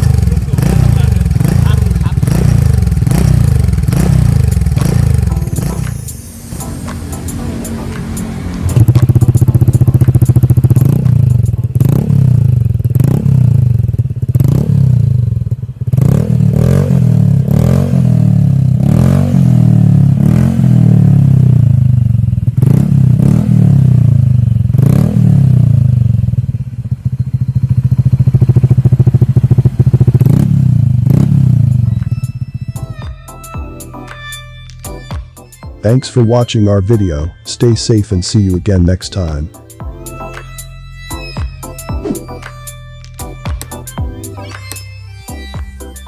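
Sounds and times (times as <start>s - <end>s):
scooter engine idling: 0.0s - 18.9s, 19.8s - 34.0s, 38.4s - 46.0s
scooter engine throttle blips: 0.0s - 19.2s, 20.1s - 33.2s.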